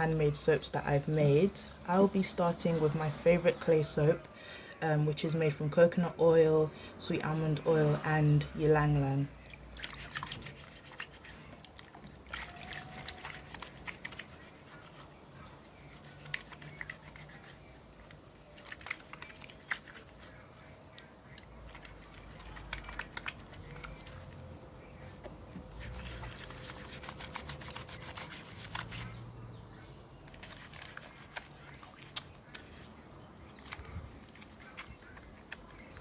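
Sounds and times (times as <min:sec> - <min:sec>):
wet soapy squelching: 0:07.9 - 0:29.4, 0:30.2 - 0:36.0
dripping water: 0:09.1 - 0:24.6
crackling suds: 0:09.2 - 0:29.3, 0:30.2 - 0:36.0.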